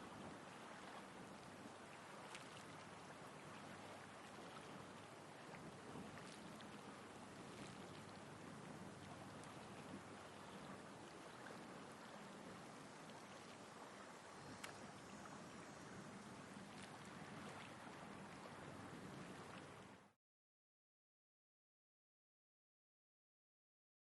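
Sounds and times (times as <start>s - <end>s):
light wind: 0.0s - 20.2s
soft ocean waves: 0.0s - 20.2s
small ticks: 14.4s - 15.0s.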